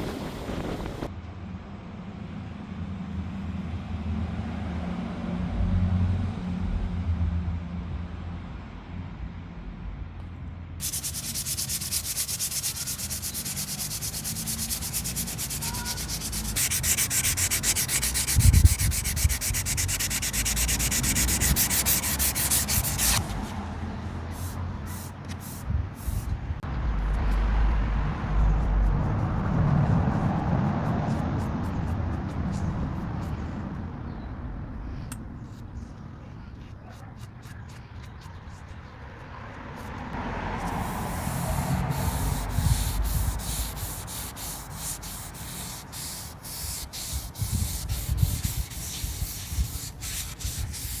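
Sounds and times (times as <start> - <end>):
sanding wood: 10.8 - 23.6, 24.4 - 26.3, 40.6 - 51.0.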